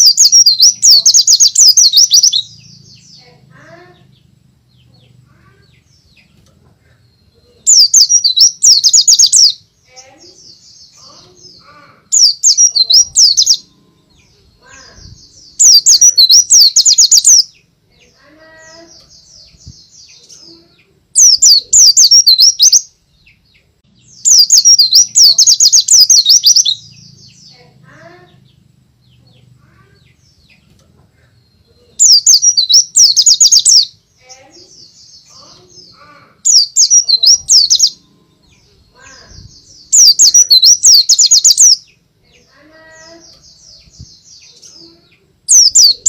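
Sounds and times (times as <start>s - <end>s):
bird twittering song: 0.0s - 46.0s
faint bird chirps: 29.2s - 46.0s.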